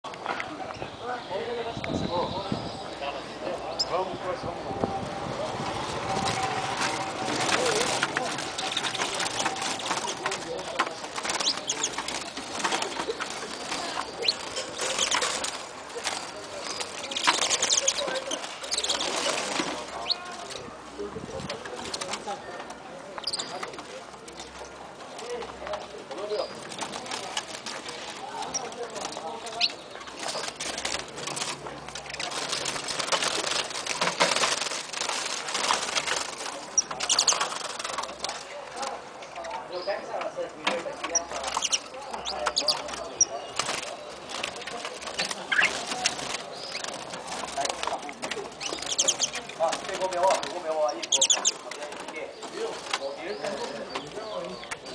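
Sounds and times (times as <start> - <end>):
birds chirping and whistling: 0.6 - 5.1, 5.7 - 20.4, 23.2 - 23.7, 28.4 - 31.0, 36.7 - 37.8, 41.0 - 44.4, 45.0 - 54.9
rustles and wing flutters: 4.7 - 22.4, 26.3 - 39.0, 41.0 - 54.9.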